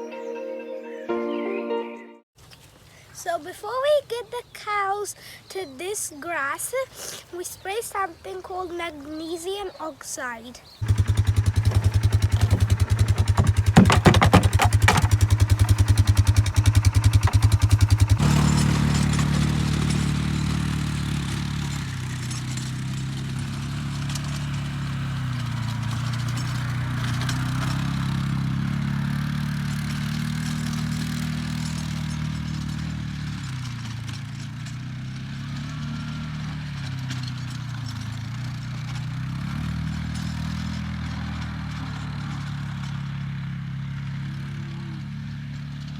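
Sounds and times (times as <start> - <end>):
farm vehicle engine running: 10.8 - 45.9.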